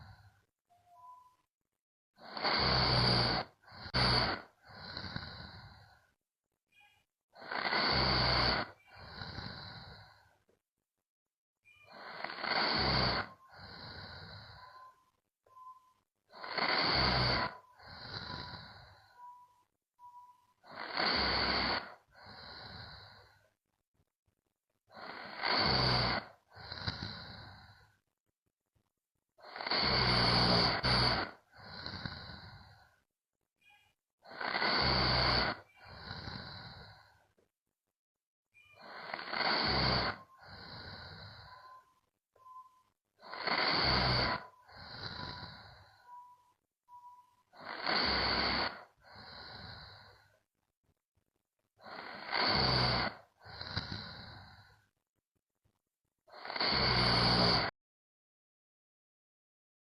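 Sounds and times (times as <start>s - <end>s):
woman snoring: 2.2s - 6.2s, 7.3s - 10.5s, 11.8s - 23.6s, 24.9s - 28.0s, 29.4s - 33.1s, 34.2s - 37.4s, 38.6s - 50.5s, 51.8s - 54.9s, 56.2s - 57.8s.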